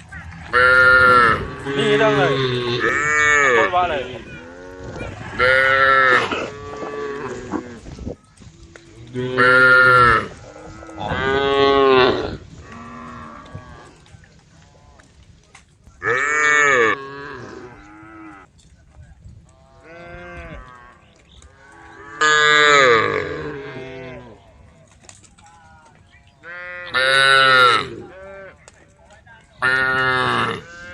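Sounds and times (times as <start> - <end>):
cows mooing: 0.5 - 7.9, 8.7 - 14.1, 16.0 - 18.5, 19.6 - 24.7, 26.4 - 28.6, 29.6 - 30.9.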